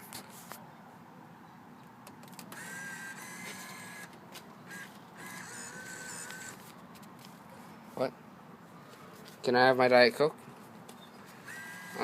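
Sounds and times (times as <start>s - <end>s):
bill acceptor motor whirring: 2.5s - 6.7s, 11.2s - 12.0s.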